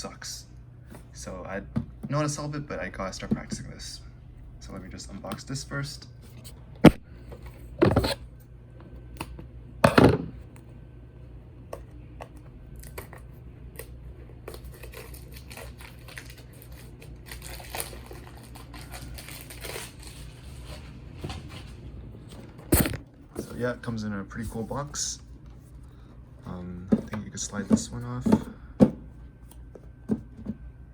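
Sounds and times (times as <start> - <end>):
plastic packaging crinkling and tearing: 13.8 - 21.0.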